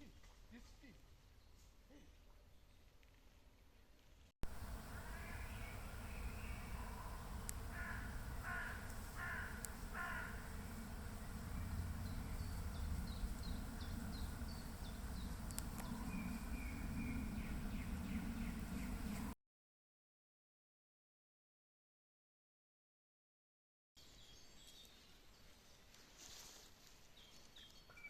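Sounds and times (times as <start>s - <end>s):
low rumble: 4.4s - 19.4s
bird cawing: 4.8s - 12.5s.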